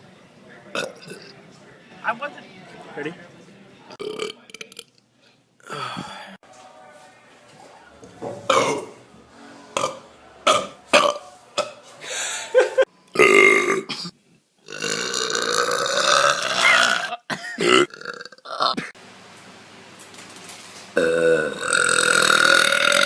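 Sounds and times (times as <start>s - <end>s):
person burping: 0.7s - 1.2s, 4.0s - 4.9s, 8.5s - 9.0s, 9.8s - 11.8s, 13.1s - 19.0s, 21.0s - 23.0s.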